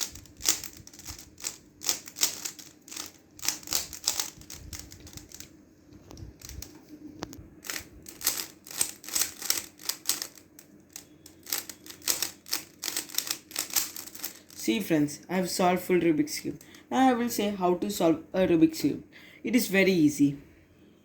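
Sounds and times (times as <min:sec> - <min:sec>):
puzzle cube plastic clicks: 0:00.0 - 0:05.5, 0:06.1 - 0:14.6.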